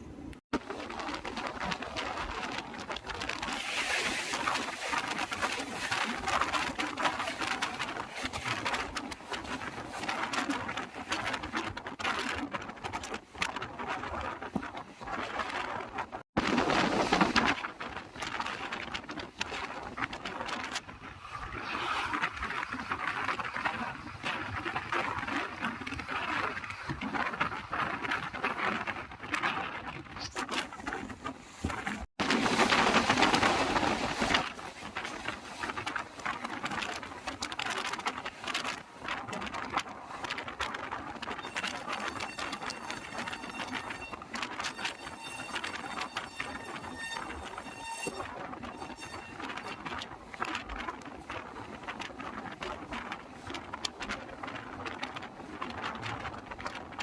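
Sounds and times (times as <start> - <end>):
train running rush and clatter: 0.6 - 13.8, 16.4 - 26.9, 30.2 - 51.6.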